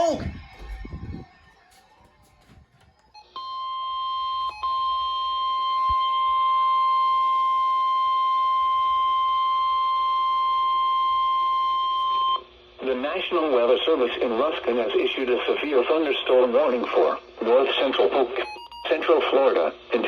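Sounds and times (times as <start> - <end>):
steady high-pitched alarm tone: 0.0 - 12.4.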